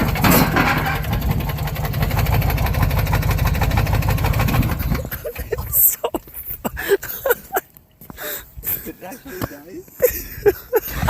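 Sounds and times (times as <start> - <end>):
car engine idling with knocking: 0.0 - 5.1.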